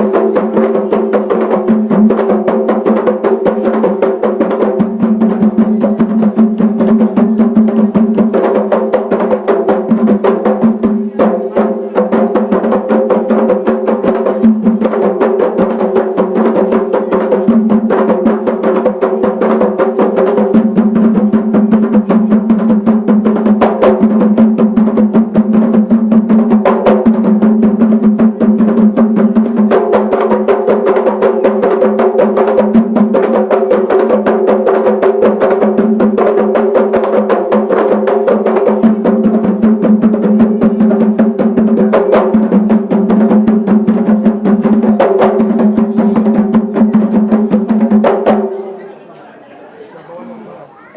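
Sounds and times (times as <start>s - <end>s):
fast dense drum percussion: 0.0s - 48.6s.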